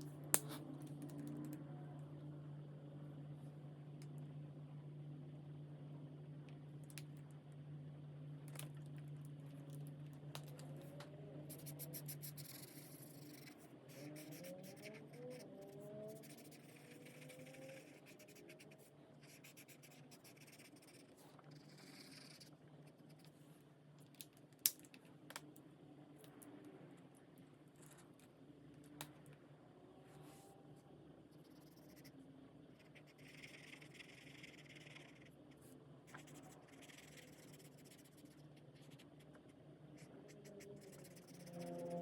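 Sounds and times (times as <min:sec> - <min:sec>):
low steady hum: 0:00.0 - 0:42.0
marker scratching on paper: 0:11.5 - 0:22.5, 0:36.1 - 0:39.4, 0:40.0 - 0:41.9.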